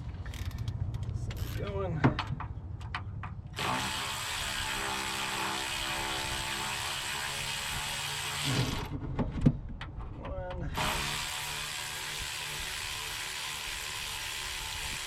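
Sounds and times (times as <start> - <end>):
cordless power driver running: 10.8 - 15.0.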